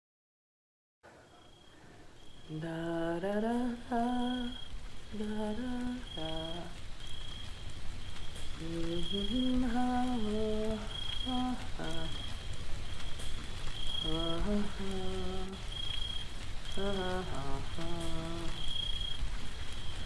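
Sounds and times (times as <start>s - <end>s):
rain-like hiss: 1.1s - 20.0s
person humming a melody: 2.5s - 6.8s, 8.6s - 12.2s, 14.0s - 15.6s, 16.8s - 18.7s.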